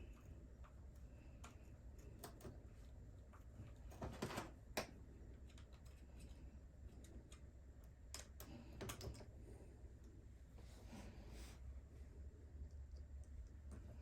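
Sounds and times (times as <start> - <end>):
clicks of small plastic and metal parts: 8.1 - 9.3.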